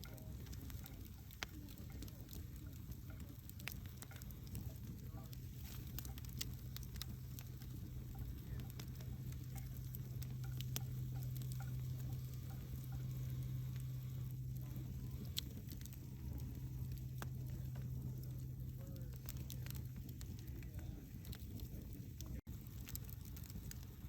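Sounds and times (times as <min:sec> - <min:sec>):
steady low hum: 0:00.0 - 0:24.0
wood fire crackling and popping: 0:00.0 - 0:24.0.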